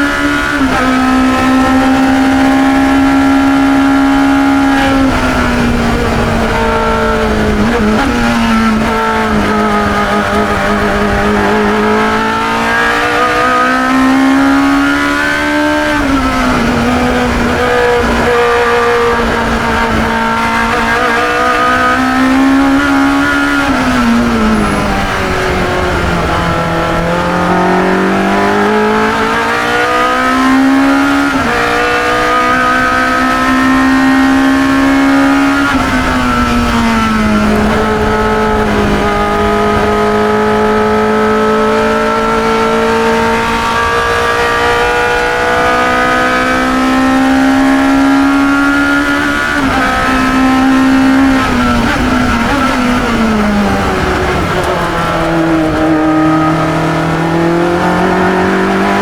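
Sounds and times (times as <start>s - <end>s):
race car engine at speed: 0.0s - 59.0s.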